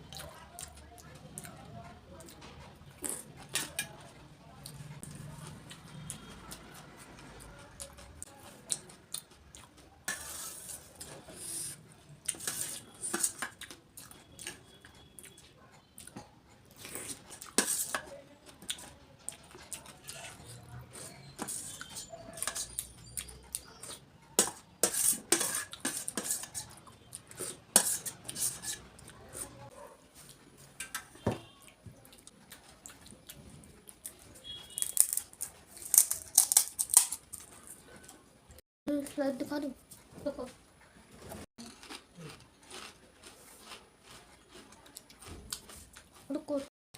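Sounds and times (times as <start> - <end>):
dishes and cutlery clinking: 3.4 - 4.1, 20.0 - 26.8, 27.4 - 28.8
crisp shells crunching: 34.8 - 37.5.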